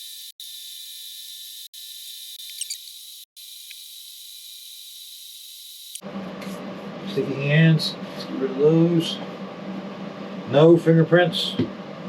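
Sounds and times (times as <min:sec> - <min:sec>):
thin high-pitched hiss: 0:02.4 - 0:03.8.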